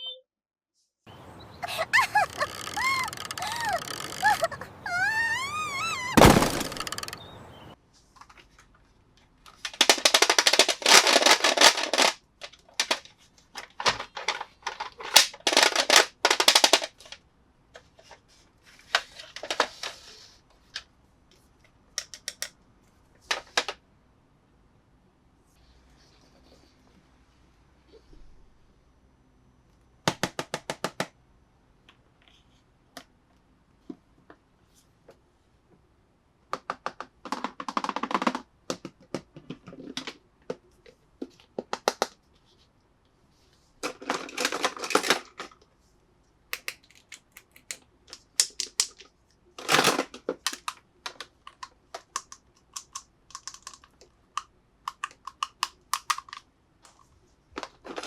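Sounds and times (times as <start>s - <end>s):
plastic toy pieces clicking: 2.0s - 7.3s, 9.5s - 17.2s, 22.0s - 22.6s, 43.8s - 45.6s, 46.6s - 56.5s.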